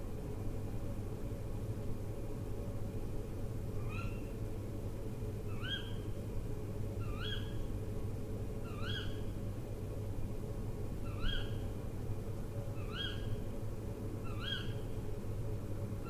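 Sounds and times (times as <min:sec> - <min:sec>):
owl calling: 0:05.5 - 0:06.0, 0:07.0 - 0:07.6, 0:11.1 - 0:11.6, 0:12.8 - 0:13.3, 0:14.2 - 0:14.8.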